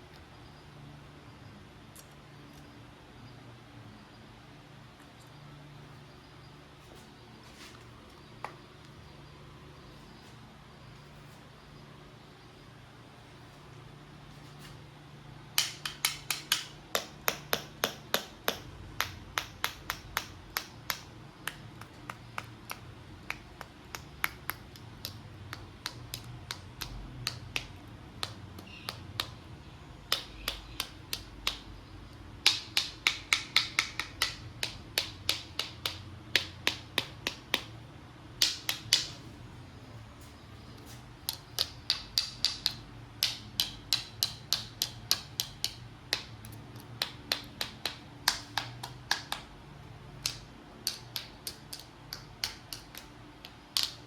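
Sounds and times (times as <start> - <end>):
plastic toys clicking: 32.4 - 37.7, 41.2 - 49.5, 50.2 - 54.0.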